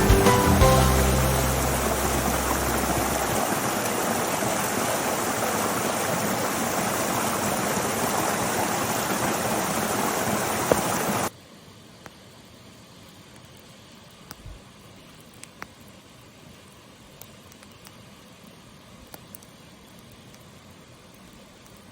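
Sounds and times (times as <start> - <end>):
stream water rushing: 0.0 - 11.3.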